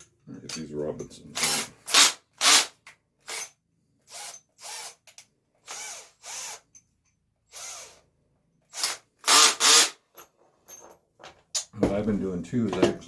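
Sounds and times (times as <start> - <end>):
cordless drill driving screws into wood: 1.4 - 6.8, 7.5 - 8.0, 8.7 - 10.1.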